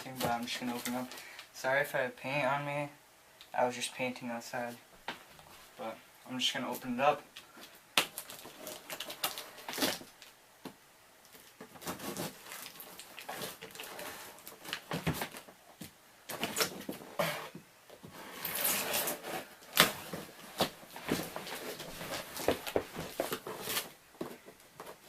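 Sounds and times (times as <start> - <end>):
packaging rustling and crinkling: 7.6 - 10.4, 11.3 - 15.6, 18.0 - 25.0.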